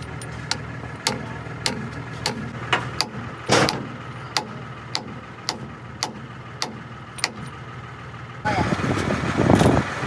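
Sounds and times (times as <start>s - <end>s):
hammer striking metal: 0.5s - 7.6s.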